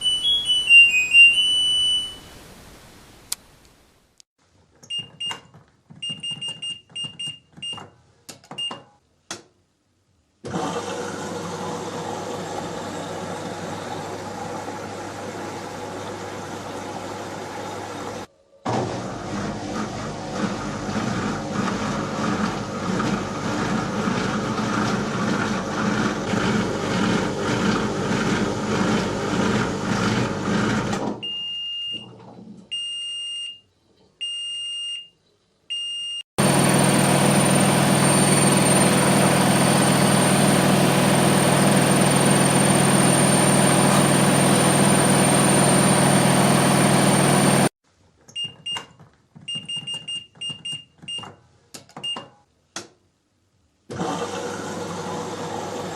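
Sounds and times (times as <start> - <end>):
short high electronic beeps: 0.0 - 2.4
washing machine churning: 10.5 - 31.2, 36.4 - 47.7, 53.9 - 55.9.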